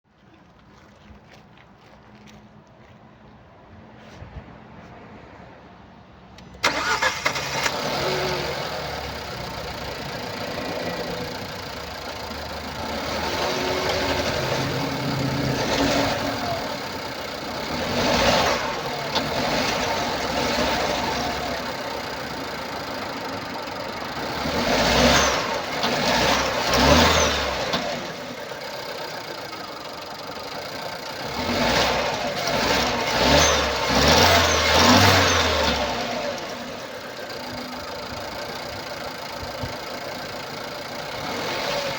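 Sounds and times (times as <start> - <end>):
car engine starting and idling: 6.2 - 41.9
engine revving: 6.6 - 41.9.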